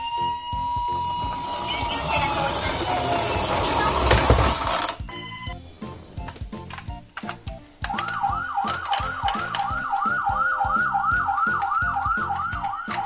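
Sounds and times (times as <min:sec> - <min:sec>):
background music with steady beat: 0:00.0 - 0:13.0
toy electronic siren yelping: 0:07.9 - 0:13.0.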